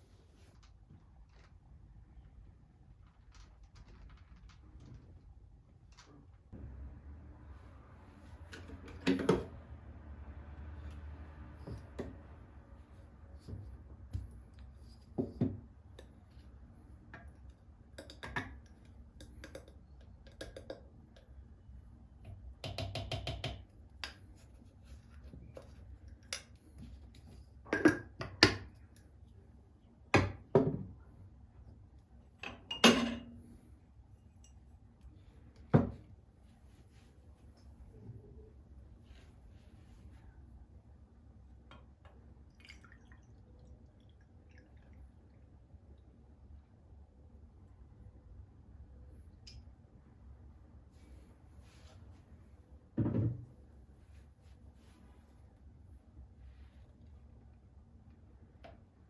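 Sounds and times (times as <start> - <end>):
dishes clinking and knocking: 32.4 - 33.4.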